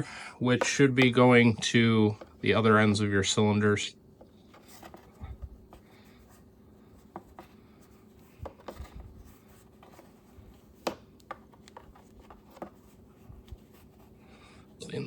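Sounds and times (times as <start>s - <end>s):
faint handling rubbing: 0.5s - 15.0s.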